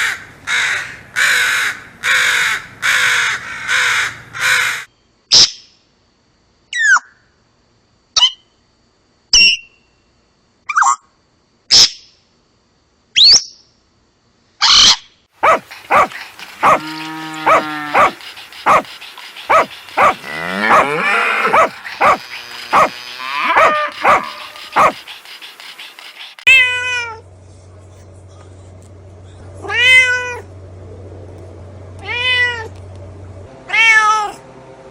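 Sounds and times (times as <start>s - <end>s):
wavering animal calls: 15.4s - 26.4s.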